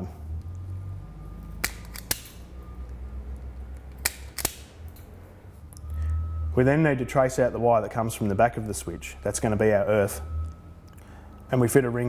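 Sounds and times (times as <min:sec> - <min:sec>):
wire strippers clicking shut: 0:01.6 - 0:02.5, 0:03.8 - 0:05.1.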